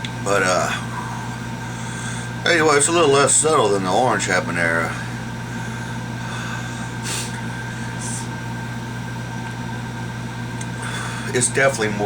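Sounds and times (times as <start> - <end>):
low electrical hum: 0.0 - 12.0
short hisses: 7.0 - 7.4.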